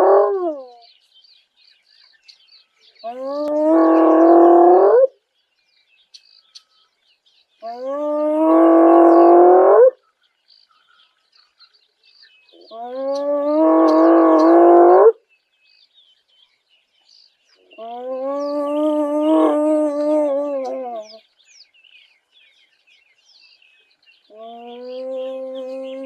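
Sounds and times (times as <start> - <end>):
hyena whooping: 17.8 - 21.2.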